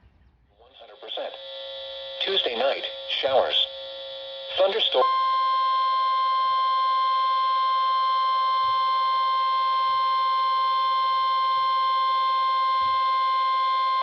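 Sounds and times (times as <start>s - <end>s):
faint radio hum: 0.5s - 5.1s.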